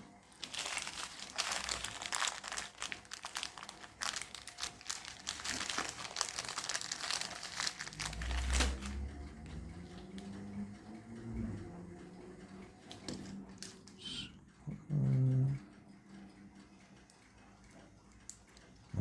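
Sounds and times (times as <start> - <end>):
plastic rustling and crinkling: 0.3 - 9.0.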